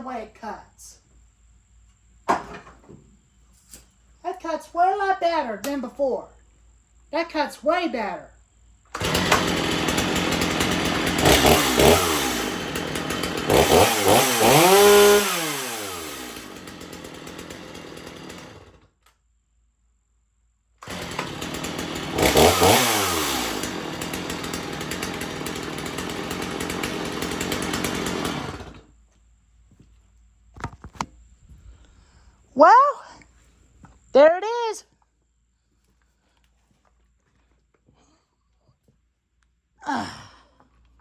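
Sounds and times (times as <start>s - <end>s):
chainsaw revving: 8.9s - 18.8s, 20.8s - 28.9s.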